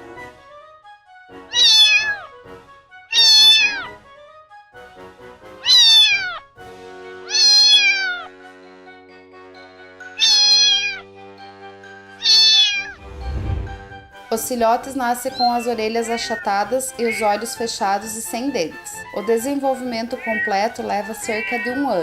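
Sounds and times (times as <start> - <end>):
soft background music: 0.0 - 22.0
cat meowing: 1.5 - 2.4, 3.1 - 4.0, 5.6 - 6.5, 7.2 - 8.3, 10.1 - 11.0, 12.2 - 13.0, 15.3 - 17.7, 19.8 - 22.0.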